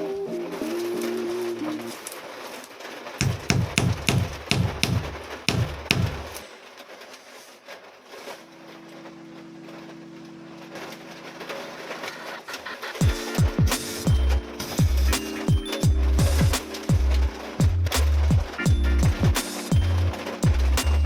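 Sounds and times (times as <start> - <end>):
deep bass kicks falling in pitch: 13.0 - 15.2, 15.8 - 20.8
held low chord: 13.0 - 21.0
regular music beat: 13.0 - 21.0.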